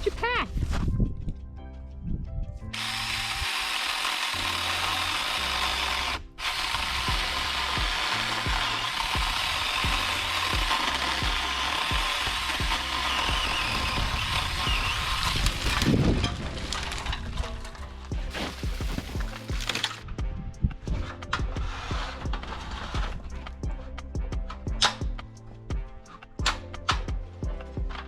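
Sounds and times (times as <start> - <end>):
mini chainsaw cutting branches: 2.7 - 17.3, 18.3 - 20.1.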